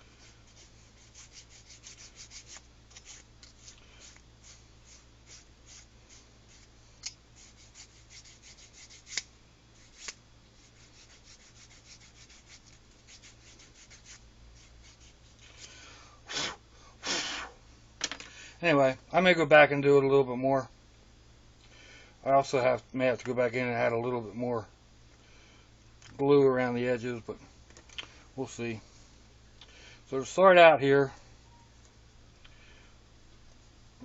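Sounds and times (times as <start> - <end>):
nail file rasping on leather: 0.5 - 6.7, 7.4 - 15.2.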